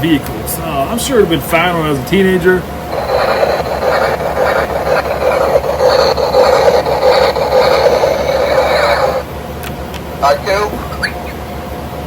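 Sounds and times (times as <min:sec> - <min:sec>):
spaceship engine drone: 0:02.9 - 0:09.3.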